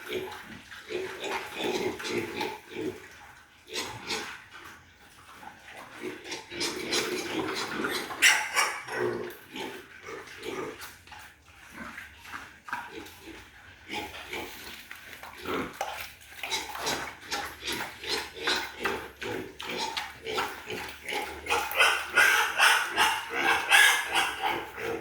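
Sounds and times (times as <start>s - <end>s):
pigs calling: 0.0s - 25.0s.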